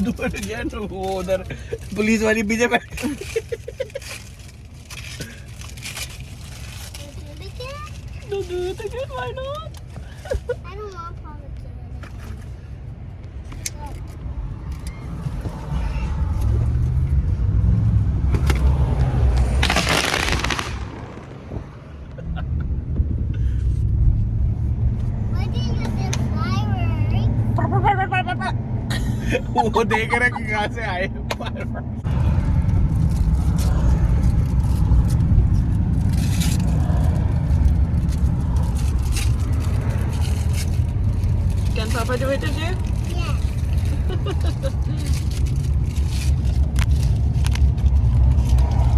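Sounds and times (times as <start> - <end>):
car rumble: 0.0 - 48.9
sharp crack: 18.3 - 22.2
firework crackling: 19.2 - 22.1.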